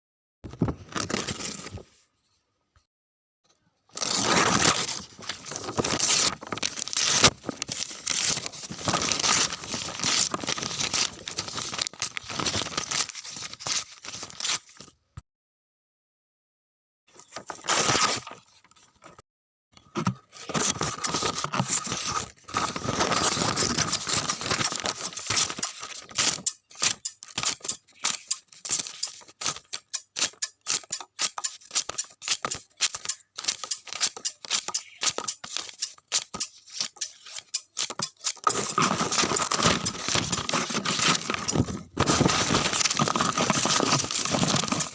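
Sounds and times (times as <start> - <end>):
paper tearing: 4.0 - 14.5, 20.4 - 44.9.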